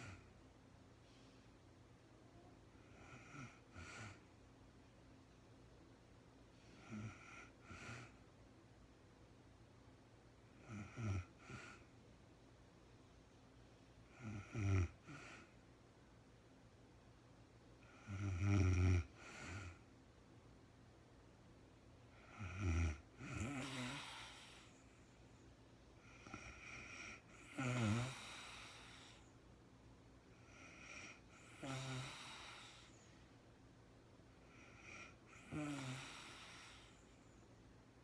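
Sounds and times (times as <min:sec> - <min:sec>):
woman snoring: 0:00.0 - 0:00.3, 0:02.8 - 0:04.2, 0:06.8 - 0:08.2, 0:10.6 - 0:11.8, 0:14.1 - 0:15.5, 0:17.9 - 0:19.8, 0:22.2 - 0:24.8, 0:26.0 - 0:29.2, 0:30.4 - 0:33.0, 0:34.5 - 0:37.1.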